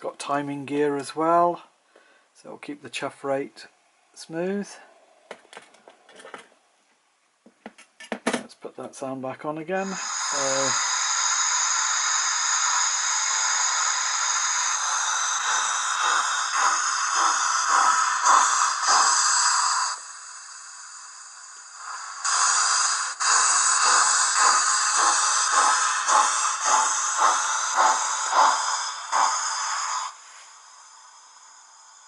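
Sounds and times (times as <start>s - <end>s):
steam hiss from small speaker: 9.7s - 32.0s
steam locomotive chuffs: 9.8s - 32.0s.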